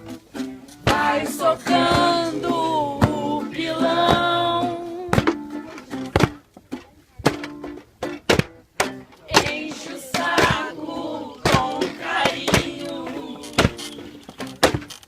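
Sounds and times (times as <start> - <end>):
music with singing: 0.6 - 5.9, 9.3 - 14.4
hand tools thudding: 0.9 - 10.8, 11.4 - 15.0.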